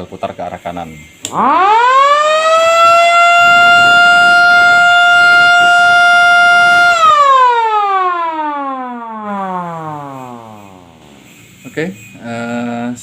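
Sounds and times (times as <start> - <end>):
electric siren wailing: 1.0 - 11.7.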